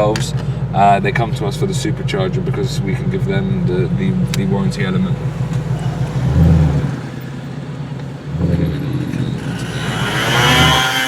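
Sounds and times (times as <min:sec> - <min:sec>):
car engine from inside cabin: 0:00.0 - 0:11.0
supercharger whine rising: 0:04.8 - 0:11.0.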